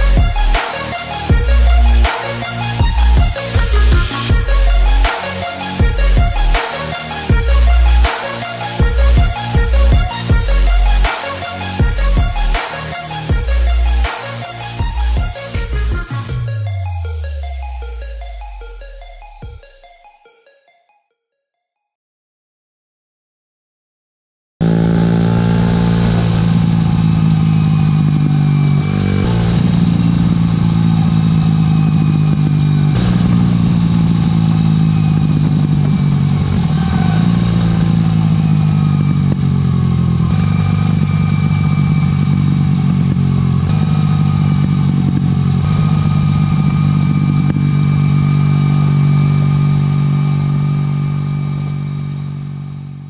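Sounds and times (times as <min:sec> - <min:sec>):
motorcycle engine idling and revving: 0:00.0 - 0:19.6, 0:24.6 - 0:53.0
exhaust crackles and pops: 0:24.6 - 0:53.0.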